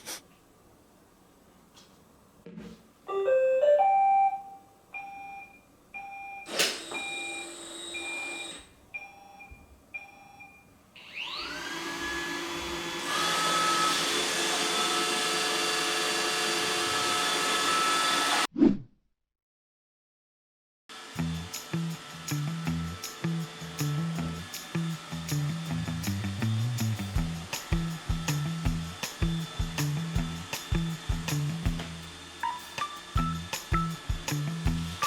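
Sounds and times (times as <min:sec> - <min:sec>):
vacuum motor whining: 0:06.5 - 0:08.7, 0:11.0 - 0:18.5.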